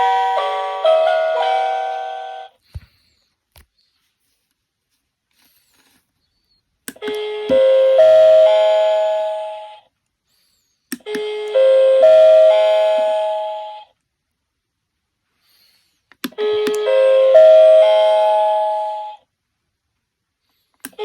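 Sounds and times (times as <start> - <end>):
rising chime: 0.0 - 2.5.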